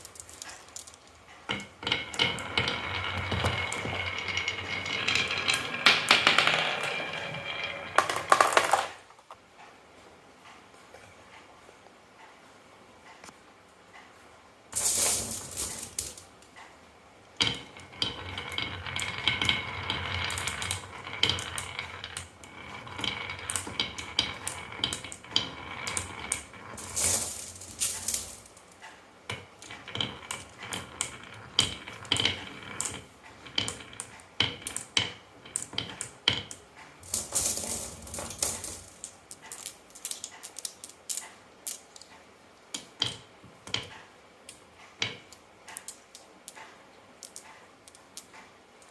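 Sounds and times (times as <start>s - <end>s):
marbles rattling down marble run: 0.0s - 9.0s, 14.8s - 16.4s, 17.4s - 42.1s.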